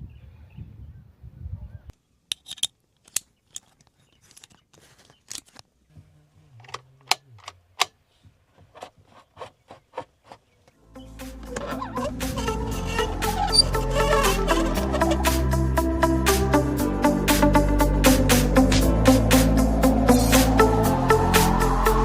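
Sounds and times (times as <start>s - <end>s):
music: 10.8s - 22.0s.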